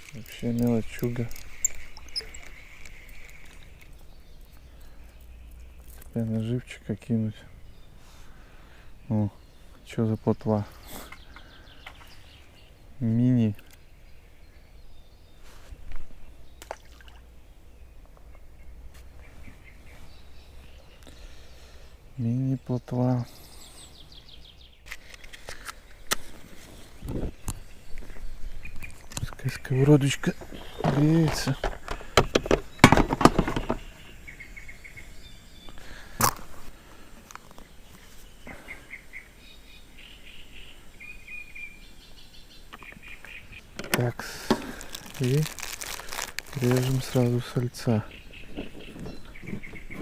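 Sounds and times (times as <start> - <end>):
faint bird chirps: 0.1 - 24.9, 37.6 - 44.1
wind on microphone: 26.9 - 27.6.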